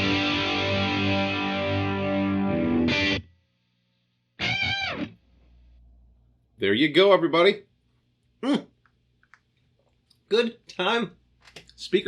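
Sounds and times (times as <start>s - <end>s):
distorted electric guitar chord: 0.0s - 3.2s.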